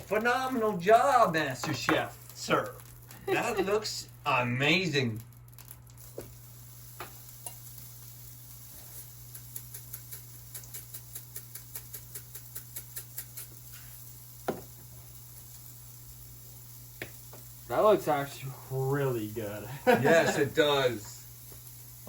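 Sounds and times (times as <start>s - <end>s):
soft regular ticks: 0.0s - 3.3s, 5.2s - 17.7s, 20.6s - 22.0s.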